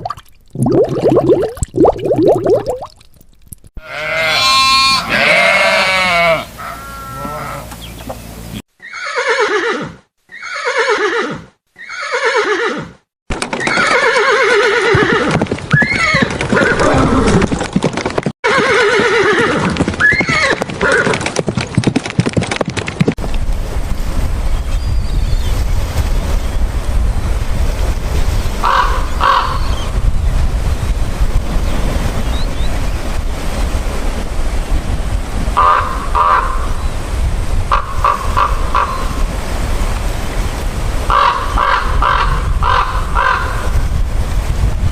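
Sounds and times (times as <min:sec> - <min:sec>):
farm animal calls: 0:03.8 - 0:12.5.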